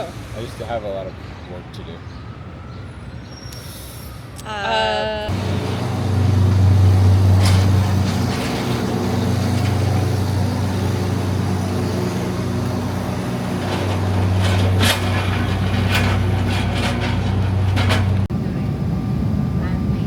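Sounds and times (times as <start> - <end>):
vehicle humming: 5.0 - 19.4.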